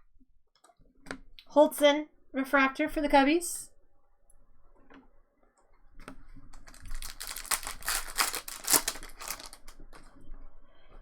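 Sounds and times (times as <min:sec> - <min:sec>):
cards being flipped through: 0:06.7 - 0:09.7.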